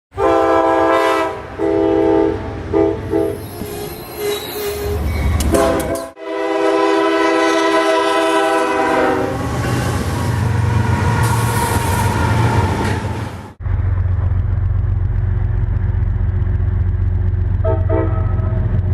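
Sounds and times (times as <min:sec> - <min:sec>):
locomotive air horn blasts: 0:00.1 - 0:12.0, 0:17.6 - 0:18.8
rumble of passing train: 0:00.2 - 0:18.9.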